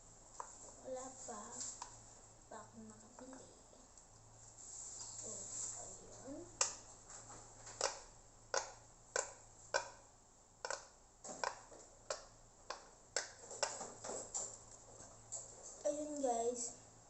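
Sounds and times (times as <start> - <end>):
fidget toy clicking: 10.6 - 13.7.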